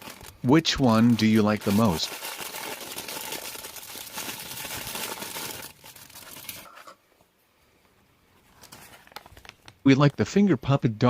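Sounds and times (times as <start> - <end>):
wrapping crinkling and rustling: 0.0 - 6.9, 8.4 - 9.9.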